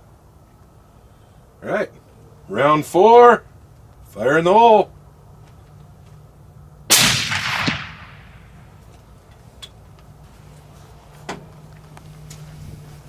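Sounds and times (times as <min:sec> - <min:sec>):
suppressed rifle shot: 0:06.9 - 0:08.8
sharp crack: 0:06.9 - 0:08.9.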